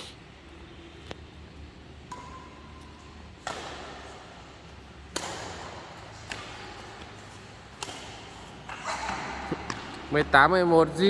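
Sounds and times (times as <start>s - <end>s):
racket striking shuttlecock: 2.0s - 10.0s.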